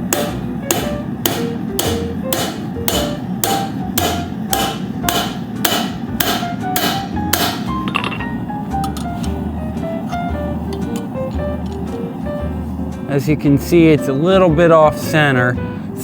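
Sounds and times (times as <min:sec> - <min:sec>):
hammer striking metal on anvil: 0:00.0 - 0:08.4
acoustic guitar music: 0:00.0 - 0:16.0.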